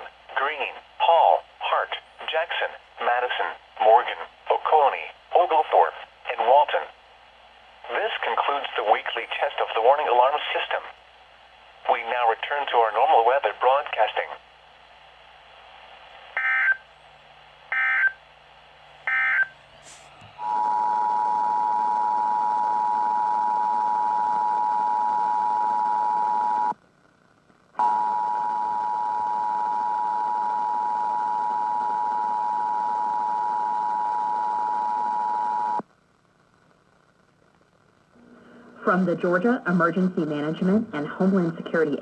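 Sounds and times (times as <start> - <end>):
background hiss: 0.0 - 23.3, 32.8 - 42.0.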